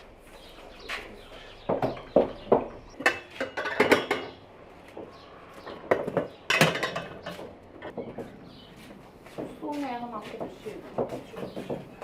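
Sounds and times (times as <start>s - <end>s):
metal kitchenware clattering: 3.0s - 4.4s, 5.9s - 8.0s.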